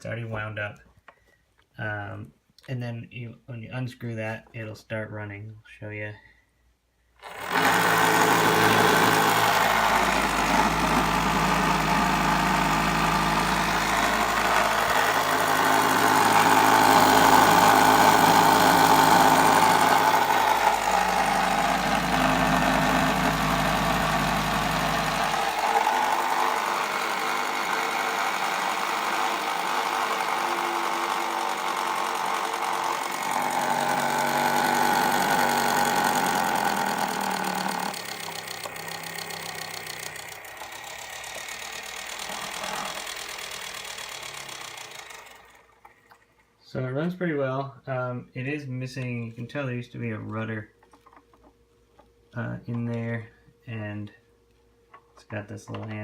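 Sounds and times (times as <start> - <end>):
clockwork toy motor whirring: 7.2 - 46.1.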